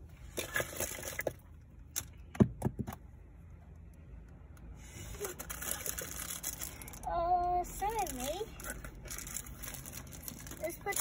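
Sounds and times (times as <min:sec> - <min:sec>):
rustling of packaging: 0:05.0 - 0:11.0.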